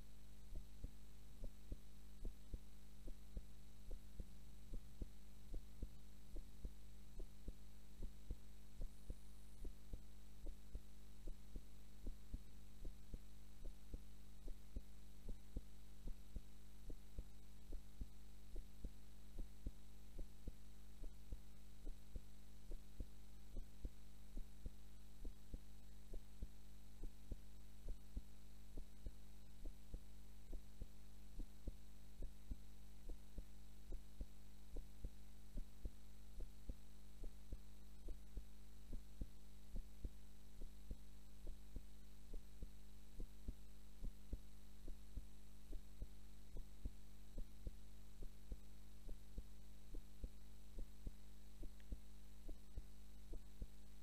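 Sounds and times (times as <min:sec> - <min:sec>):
constant low hum: 0:00.0 - 0:54.0
heartbeat thumps: 0:00.0 - 0:54.0.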